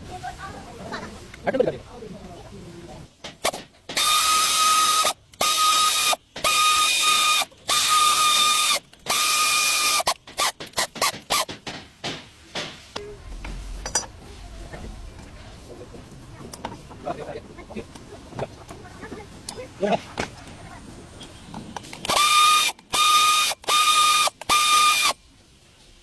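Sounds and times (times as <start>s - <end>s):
power ratchet whining: 3.4s - 11.5s, 22.0s - 25.2s.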